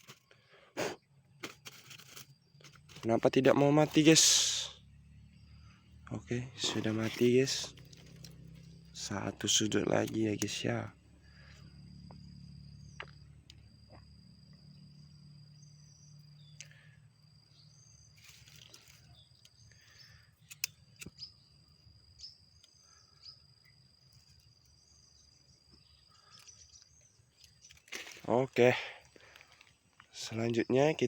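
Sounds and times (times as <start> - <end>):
insects trilling: 0.0 - 31.0
sharp clicks: 20.4 - 21.2.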